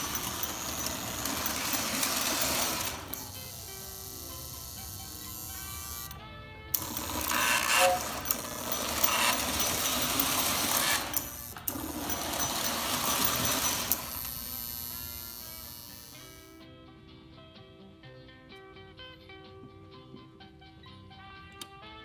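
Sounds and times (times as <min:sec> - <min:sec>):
toy train motor whirring: 0:00.0 - 0:16.6.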